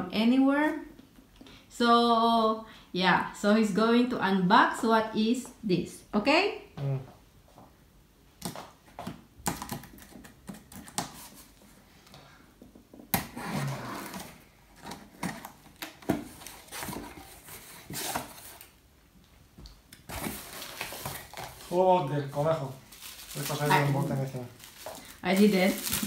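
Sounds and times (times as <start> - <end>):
parcel packaging rustling and scraping: 9.7 - 11.8, 13.2 - 18.8, 20.1 - 26.0.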